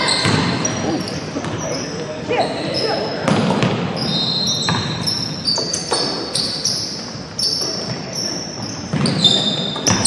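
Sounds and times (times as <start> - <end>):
sneakers squeaking on court: 0.0 - 10.0
basketball bouncing on hardwood floor: 0.2 - 0.8.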